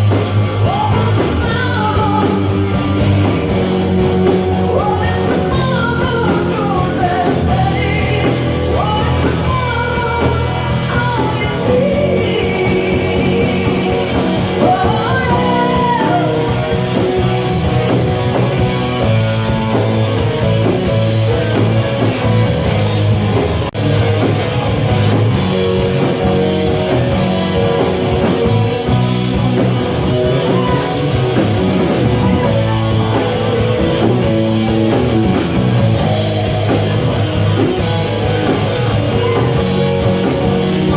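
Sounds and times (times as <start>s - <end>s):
rock band playing: 0.0s - 40.9s
person singing: 0.4s - 17.0s.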